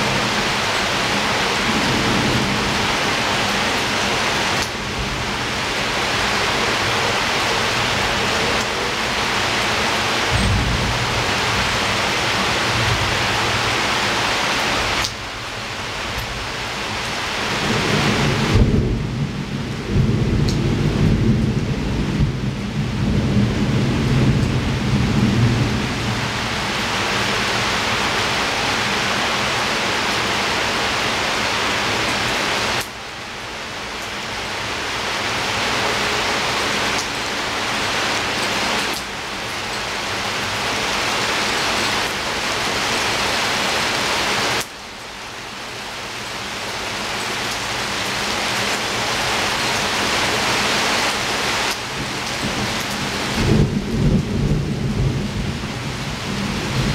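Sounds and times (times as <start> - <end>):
heavy rain falling: 0.0 - 56.9
low roll of thunder: 10.2 - 13.6, 17.6 - 26.5, 52.0 - 56.9.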